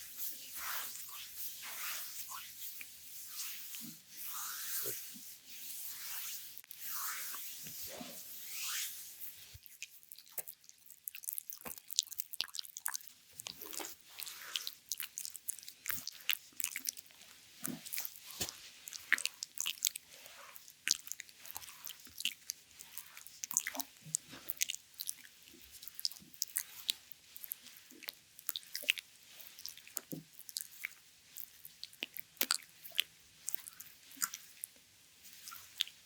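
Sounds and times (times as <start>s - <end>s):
oiled hands squishing on skin: 9.6s - 36.0s.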